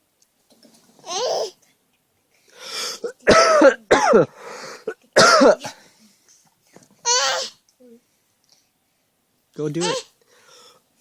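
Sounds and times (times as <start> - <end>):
child coughing: 3.0 - 4.3, 4.9 - 5.8, 9.8 - 10.1.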